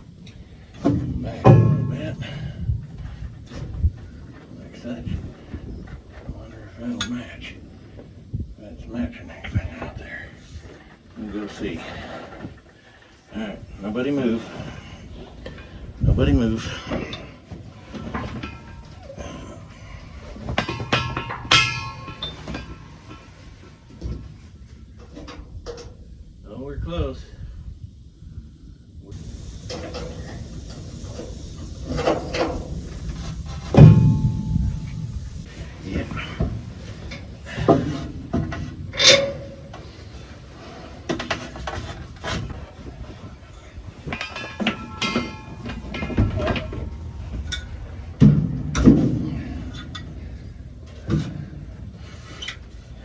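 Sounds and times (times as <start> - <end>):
metal parts clanking: 0.8 - 3.8, 16.6 - 24.2, 29.2 - 40.2, 44.0 - 47.8.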